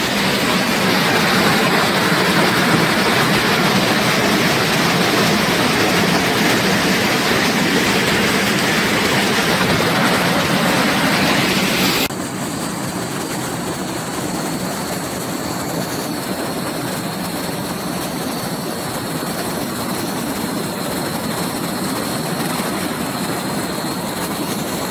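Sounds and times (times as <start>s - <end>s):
waterfall rushing: 0.0s - 12.1s.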